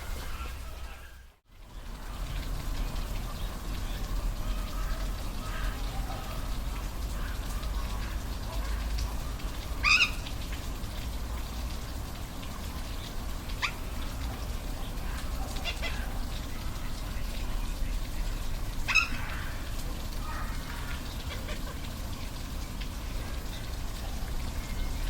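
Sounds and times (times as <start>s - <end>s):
high animal calls: 9.8s - 10.3s, 18.8s - 21.8s.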